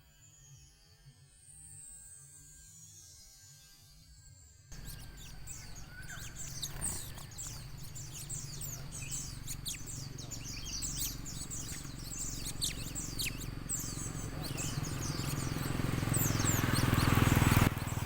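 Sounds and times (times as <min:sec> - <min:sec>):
low steady rumble: 0:04.8 - 0:18.0
small songbirds chirping: 0:04.8 - 0:18.0.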